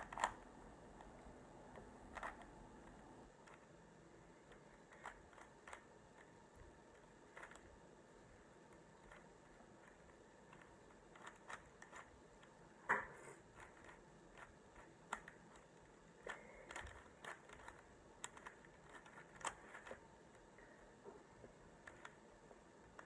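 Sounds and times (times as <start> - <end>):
puzzle cube plastic clicks: 0.0 - 3.7, 4.4 - 7.7, 8.7 - 12.5, 13.5 - 20.4, 21.8 - 22.2.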